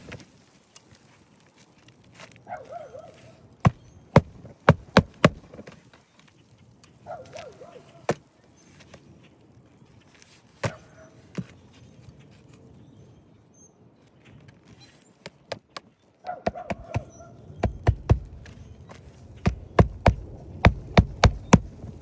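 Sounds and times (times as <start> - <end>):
sharp knocks and taps: 3.7 - 5.6, 16.5 - 18.6, 19.4 - 21.9.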